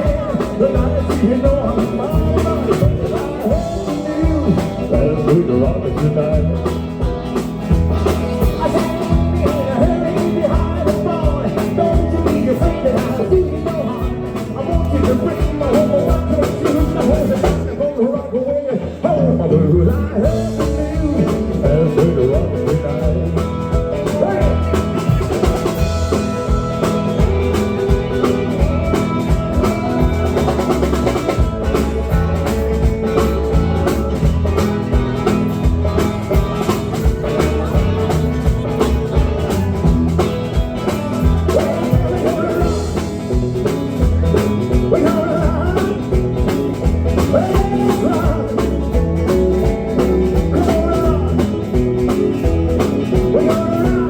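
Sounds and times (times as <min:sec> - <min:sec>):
drum kit beat: 0:00.0 - 0:18.0, 0:20.1 - 0:54.0
bass: 0:00.0 - 0:54.0
electric guitar bending notes: 0:19.3 - 0:54.0.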